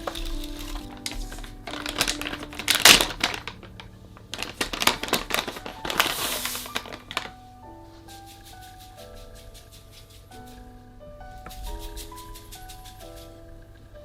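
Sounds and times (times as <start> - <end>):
plastic crinkling: 0.0 - 10.7
faint background music: 0.0 - 14.0.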